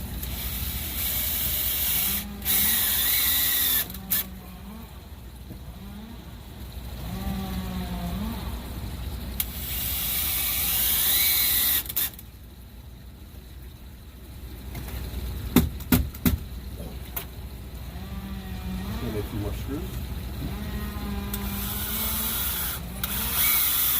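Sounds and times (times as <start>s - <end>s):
power drill driving screws: 0.3s - 4.3s, 9.7s - 12.2s, 21.3s - 23.9s
sharp knocks: 15.5s - 16.5s.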